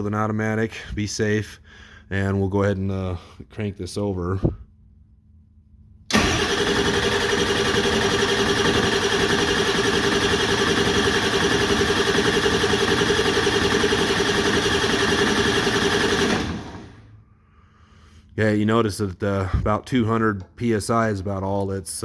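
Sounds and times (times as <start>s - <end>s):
diesel engine cranking on starter: 6.1s - 17.2s.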